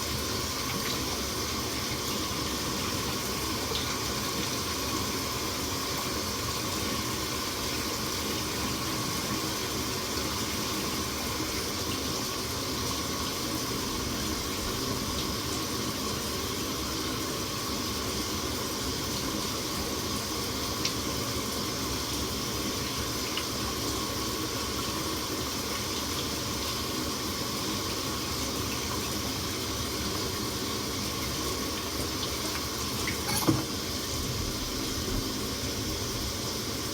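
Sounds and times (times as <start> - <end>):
shower running: 0.0 - 36.9
sink tap running: 28.3 - 36.8.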